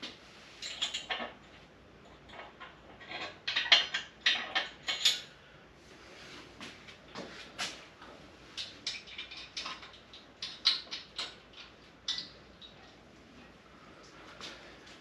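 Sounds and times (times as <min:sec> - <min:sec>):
metal clinks and knocks: 0:00.6 - 0:05.3.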